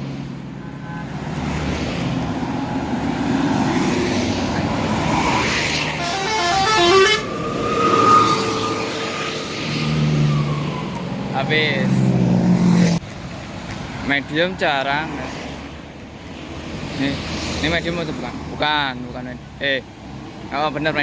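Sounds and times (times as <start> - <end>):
bus engine rumble: 0.0 - 17.2
bus horn playing stepped notes: 5.9 - 9.9.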